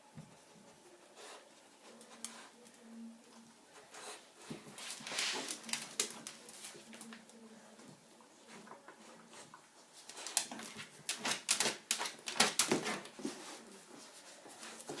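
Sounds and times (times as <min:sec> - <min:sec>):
dog scratching at a fridge: 0:10.1 - 0:13.2.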